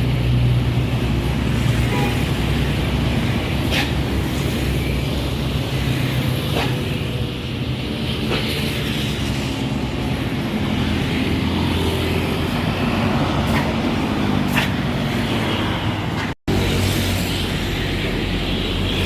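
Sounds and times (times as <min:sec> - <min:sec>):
bus engine running: 0:00.0 - 0:19.0
road traffic: 0:00.0 - 0:19.0.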